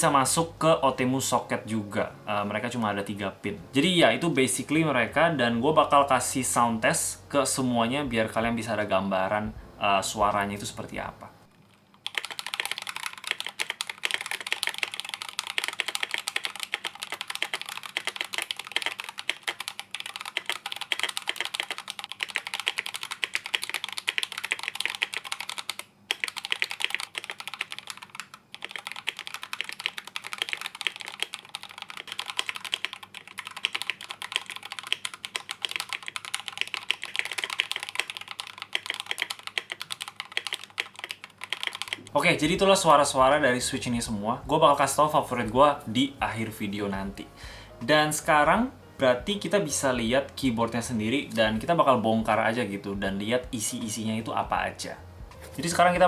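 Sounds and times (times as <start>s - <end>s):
mechanical keyboard typing: 12.0s - 44.2s.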